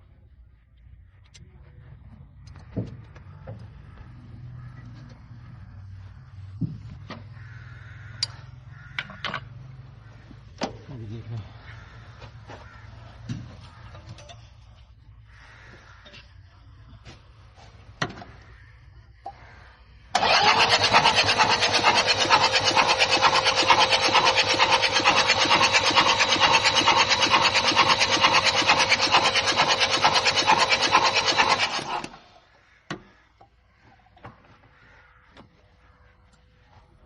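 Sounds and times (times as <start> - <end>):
diesel engine cranking on starter: 20.1 - 32.4.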